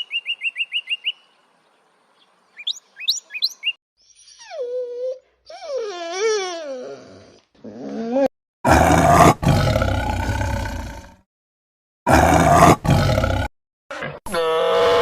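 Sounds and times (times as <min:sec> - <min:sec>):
big cat roaring: 0:06.8 - 0:11.2, 0:12.1 - 0:15.0.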